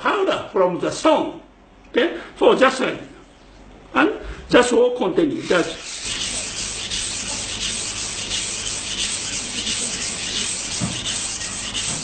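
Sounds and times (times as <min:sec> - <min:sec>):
knife scraping on whetstone: 0:05.4 - 0:12.0.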